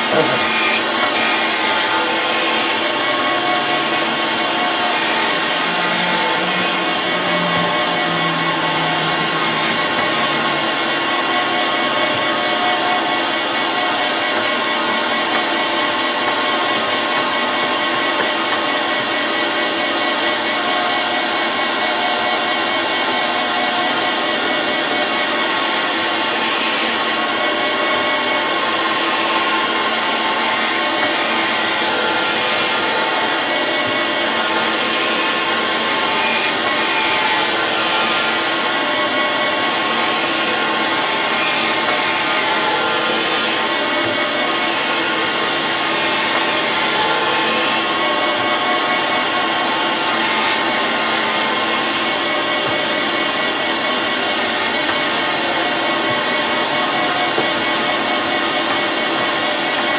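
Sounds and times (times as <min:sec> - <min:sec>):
surface grinder whining: 0:00.0 - 0:59.9.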